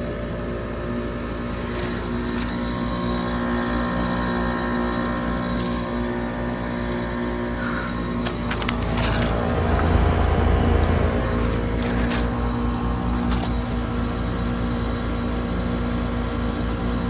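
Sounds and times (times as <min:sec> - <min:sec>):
heat pump humming: 0:00.0 - 0:17.0.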